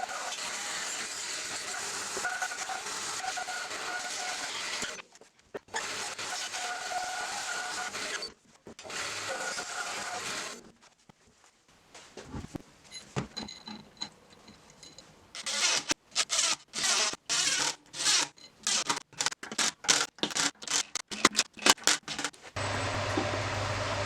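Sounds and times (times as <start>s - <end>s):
electric machine humming: 22.6s - 24.0s.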